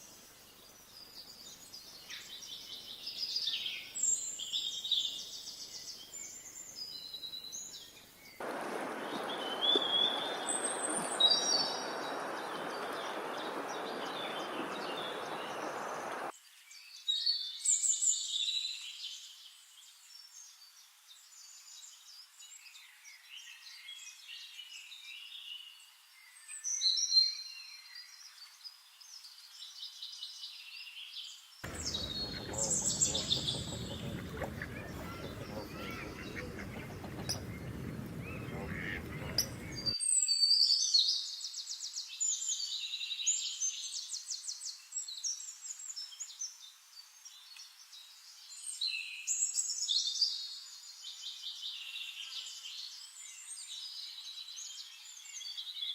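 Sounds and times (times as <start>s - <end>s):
small birds chirping: 0.0s - 16.3s, 31.6s - 40.0s
steady rushing noise: 8.4s - 16.3s.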